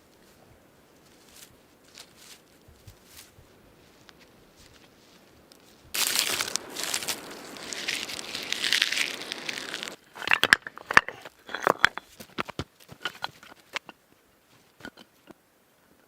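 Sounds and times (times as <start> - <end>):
rustling: 0.0 - 16.0
sharp clicks and cracks: 6.0 - 13.9.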